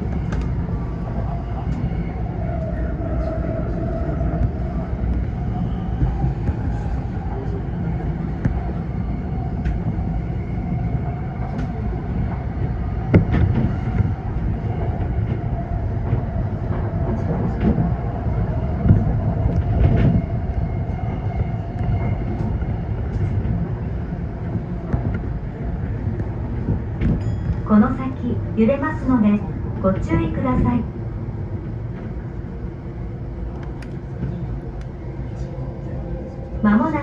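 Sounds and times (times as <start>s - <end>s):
train wheels rumbling on rail: 0.0s - 37.0s
rail joint clacks: 25.9s - 30.8s.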